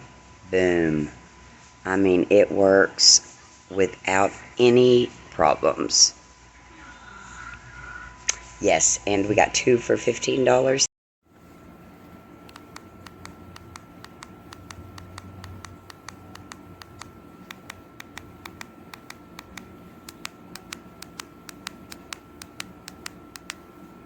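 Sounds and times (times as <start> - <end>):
remote control buttons clicking: 11.4 - 24.0.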